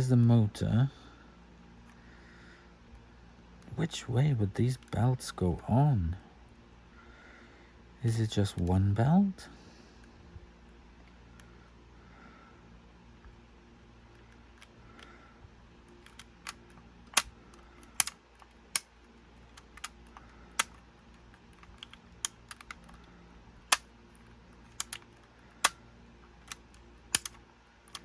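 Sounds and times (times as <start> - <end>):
small parts clicking and tapping: 15.8 - 28.0.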